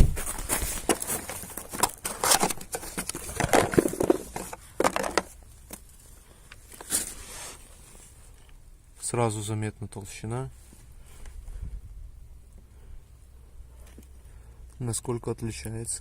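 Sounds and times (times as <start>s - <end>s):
rubber parts rustling and clicking: 0.0s - 7.2s.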